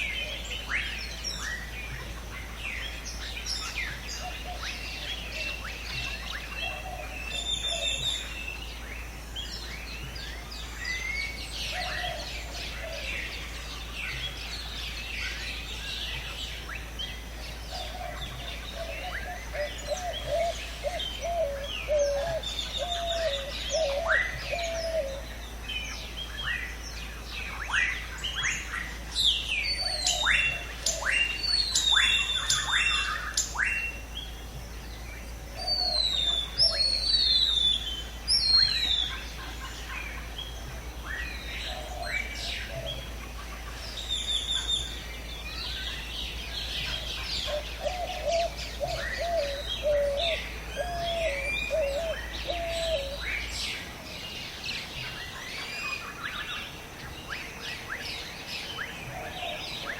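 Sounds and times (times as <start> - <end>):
birds chirping chorus: 0.0 - 59.9
low wavering bird call: 46.8 - 53.8.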